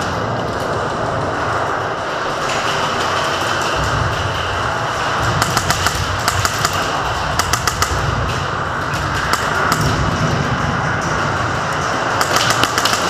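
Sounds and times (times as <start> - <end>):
steady background noise: 0.0 - 13.0
airsoft guns firing: 5.2 - 8.1, 12.1 - 13.0.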